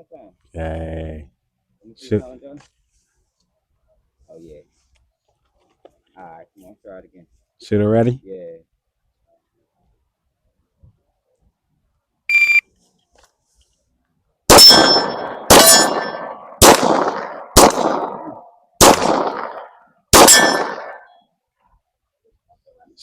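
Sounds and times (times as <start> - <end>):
shot timer beep: 12.3 - 12.6
pistol shots: 14.5 - 21.1
bullets ringing off steel targets: 14.5 - 21.2.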